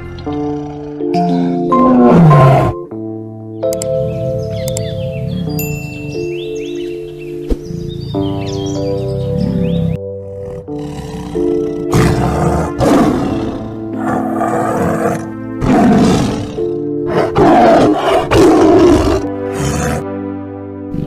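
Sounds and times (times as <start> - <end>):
background music with held chords: 0.0 - 21.0
big cat roaring and growling: 1.7 - 2.8, 9.4 - 20.0.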